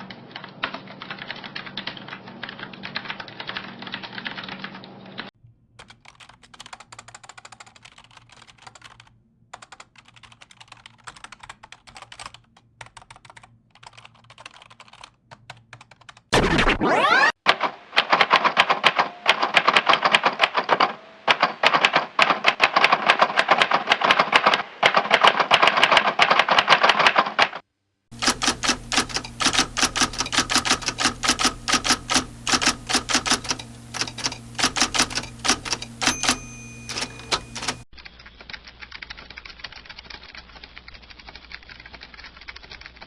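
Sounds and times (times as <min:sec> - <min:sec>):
typing on a keyboard: 0:00.2 - 0:04.9, 0:05.8 - 0:16.3, 0:17.5 - 0:43.0
steady low hum: 0:28.1 - 0:37.8
short ringing tone: 0:28.2 - 0:37.8.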